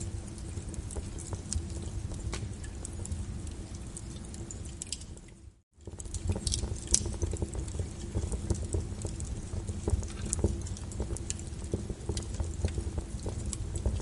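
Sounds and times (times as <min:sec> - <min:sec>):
low rumble of flames: 0:00.0 - 0:14.0
sharp snaps of fire: 0:00.0 - 0:14.0
wood fire crackling and popping: 0:00.0 - 0:14.0.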